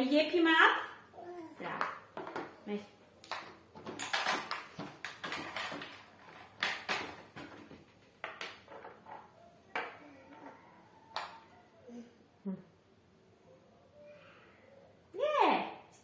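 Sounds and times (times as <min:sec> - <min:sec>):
small objects knocking on a table: 0:01.6 - 0:02.6, 0:03.2 - 0:11.4.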